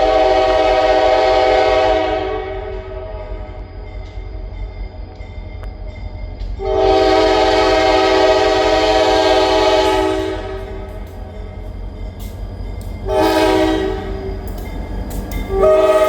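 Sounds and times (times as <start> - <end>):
locomotive air horn blast: 0.0 - 2.7, 6.6 - 10.9, 13.0 - 14.3, 15.5 - 16.0
train rumbling: 0.0 - 16.0.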